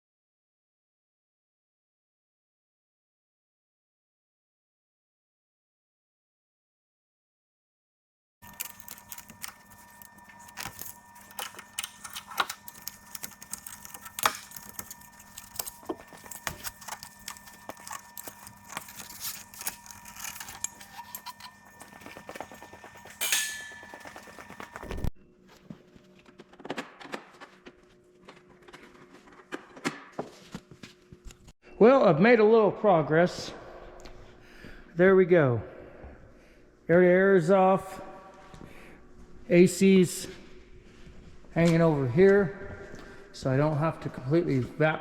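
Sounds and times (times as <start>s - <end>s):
tools clinking and clicking: 8.4s - 25.0s
steady hum: 8.4s - 26.8s.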